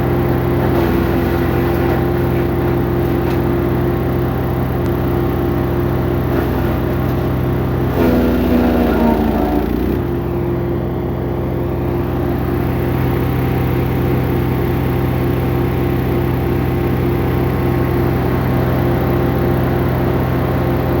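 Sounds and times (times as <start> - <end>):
wood chipper humming: 0.0 - 21.0.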